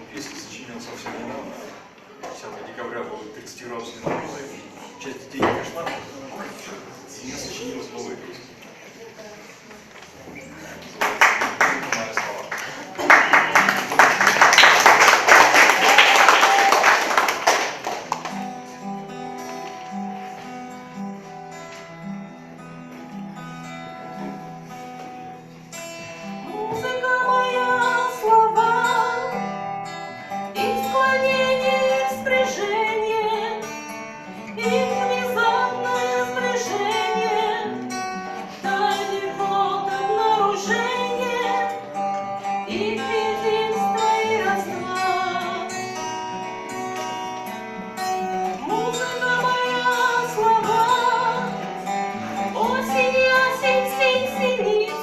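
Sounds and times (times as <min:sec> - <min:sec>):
acoustic guitar chords: 0:16.5 - 0:55.0
voices singing: 0:42.7 - 0:45.7.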